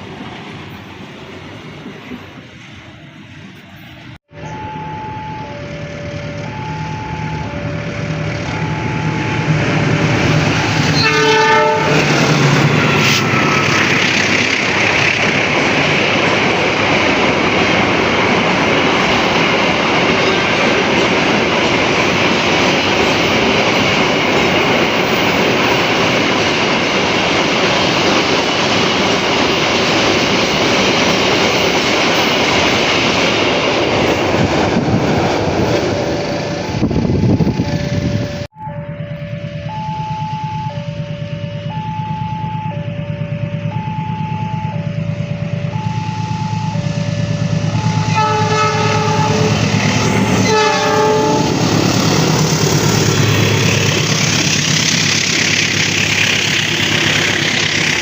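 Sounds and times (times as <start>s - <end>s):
train wheels rushing on rail: 0.0s - 4.2s, 5.8s - 38.6s, 40.4s - 58.0s
level crossing alarm two tones: 4.3s - 10.3s, 36.9s - 51.6s
train horn blast: 10.8s - 13.6s, 47.3s - 51.8s.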